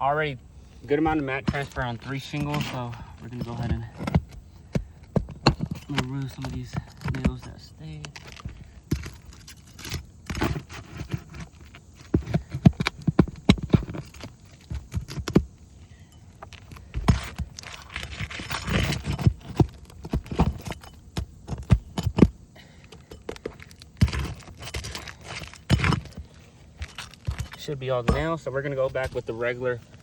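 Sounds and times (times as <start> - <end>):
scraping: 0.7 - 30.0
nails pulled from shingles: 16.4 - 27.7.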